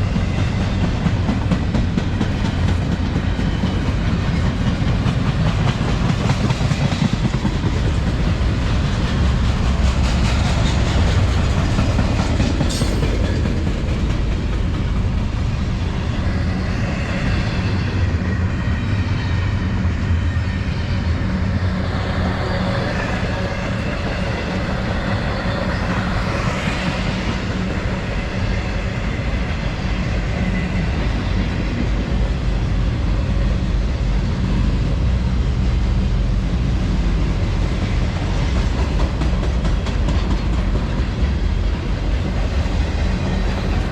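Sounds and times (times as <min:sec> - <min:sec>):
wheels clacking over rail joints: 0:00.0 - 0:15.9, 0:37.4 - 0:43.9
freight train rumbling: 0:00.0 - 0:43.9.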